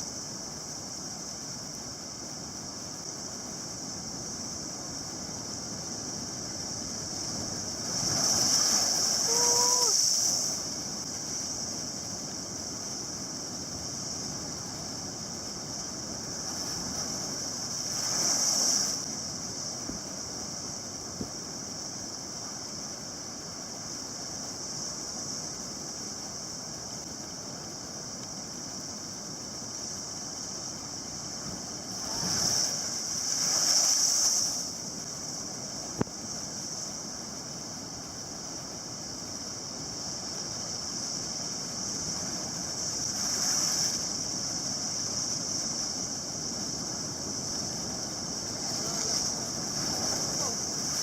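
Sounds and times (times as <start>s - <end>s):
ocean waves crashing on shore: 6.9s - 11.4s, 16.2s - 19.7s, 31.9s - 34.8s, 46.7s - 51.0s.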